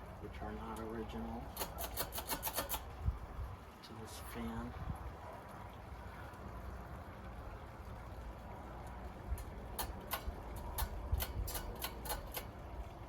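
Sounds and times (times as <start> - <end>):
metal pull chains clicking: 1.5 - 2.9, 9.4 - 12.5.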